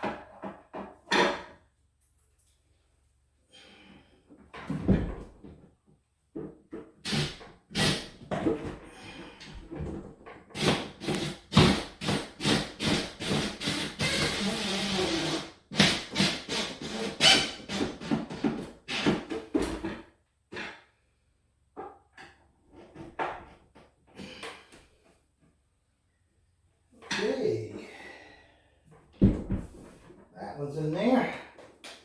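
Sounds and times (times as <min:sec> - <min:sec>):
screws being driven into wood: 0:07.0 - 0:08.3, 0:10.6 - 0:19.4.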